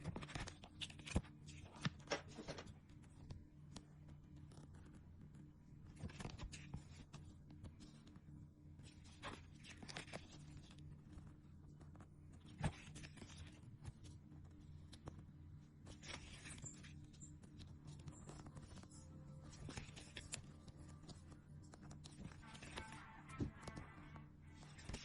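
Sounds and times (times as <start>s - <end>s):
paper and plastic rustling: 0.0s - 3.2s, 15.9s - 23.8s, 24.5s - 25.0s
low steady hum: 0.0s - 25.0s.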